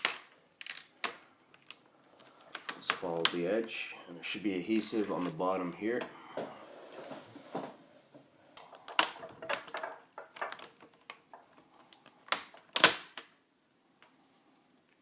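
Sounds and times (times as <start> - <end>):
plastic clips clicking and snapping: 0.0 - 3.5.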